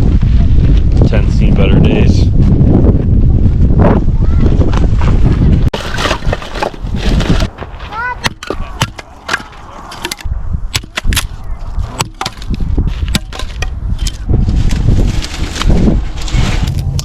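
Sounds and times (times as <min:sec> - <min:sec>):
wind buffeting microphone: 0:00.0 - 0:17.0
sharp knocks and clicks: 0:08.2 - 0:11.3.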